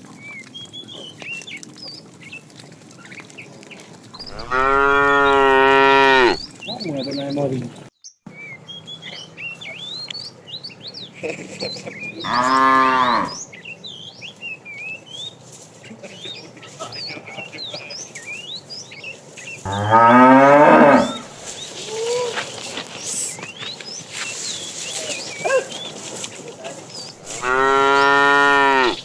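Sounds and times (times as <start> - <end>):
cattle mooing: 4.2 - 6.4, 12.2 - 13.4, 19.7 - 21.4, 27.2 - 29.0.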